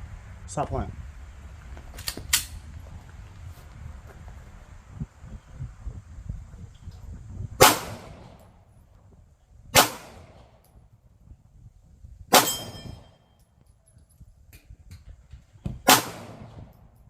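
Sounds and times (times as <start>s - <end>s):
pistol shots: 7.6s - 8.4s, 9.8s - 10.5s, 12.3s - 13.1s, 15.8s - 16.7s
metallic ring of steel target: 12.3s - 13.4s.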